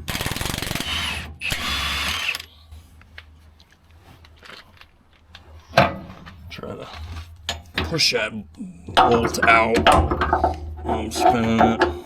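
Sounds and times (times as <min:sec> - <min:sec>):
power wrench rattling: 0:00.0 - 0:02.5.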